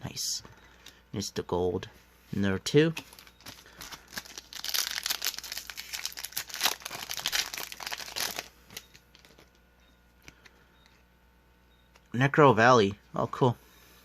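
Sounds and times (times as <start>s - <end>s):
foil wrapper crinkling and tearing: 3.1s - 9.6s.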